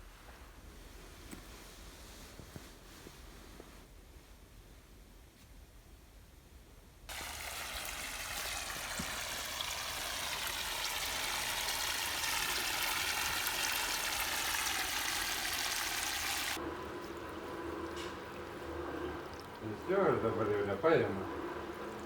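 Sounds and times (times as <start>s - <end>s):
pump humming: 7.1s - 22.0s
water gushing from pump outflow: 7.1s - 22.0s.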